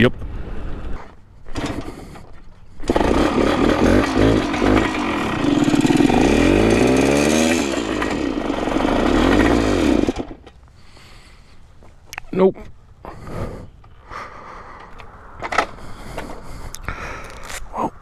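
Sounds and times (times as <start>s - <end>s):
two-stroke engine revving: 1.6s - 1.9s, 2.8s - 10.5s.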